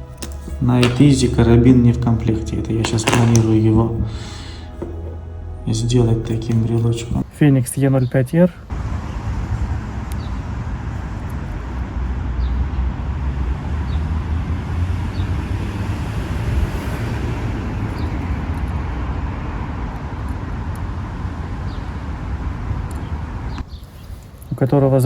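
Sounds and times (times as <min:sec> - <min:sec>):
traffic rumble: 0:00.0 - 0:24.7.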